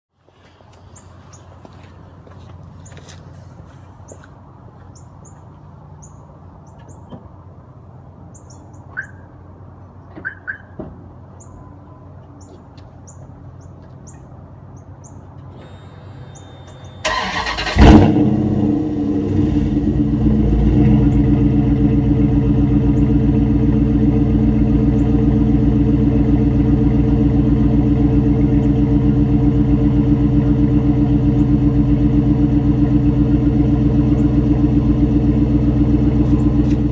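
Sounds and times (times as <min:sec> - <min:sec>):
bird chirps: 0:08.3 - 0:09.3, 0:16.2 - 0:17.0
truck engine starting and idling: 0:15.5 - 0:36.9.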